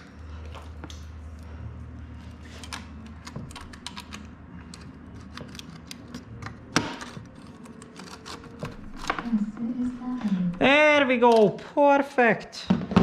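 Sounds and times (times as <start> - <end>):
hand tools clicking and tapping: 2.6 - 9.4.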